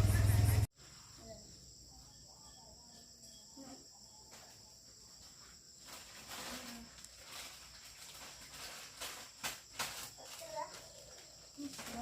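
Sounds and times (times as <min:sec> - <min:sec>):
insects chirring: 0:00.0 - 0:12.0
rustling: 0:04.4 - 0:12.0.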